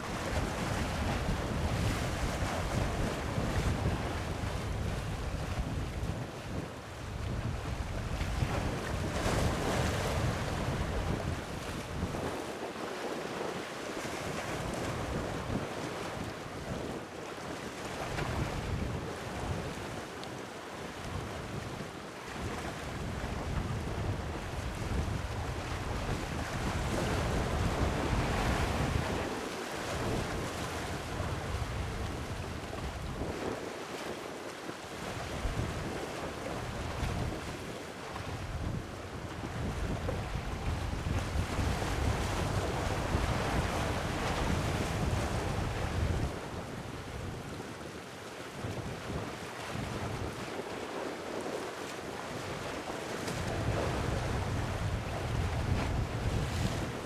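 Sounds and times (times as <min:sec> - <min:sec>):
wind buffeting microphone: 0:23.0 - 0:33.5, 0:38.2 - 0:47.5, 0:53.3 - 0:57.0.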